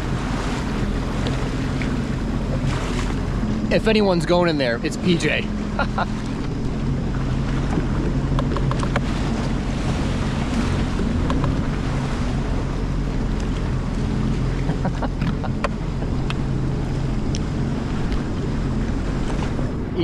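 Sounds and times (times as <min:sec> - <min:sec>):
wind on microphone: 0:00.0 - 0:03.7
jet ski engine drone: 0:00.0 - 0:20.0
water noise: 0:00.0 - 0:20.0.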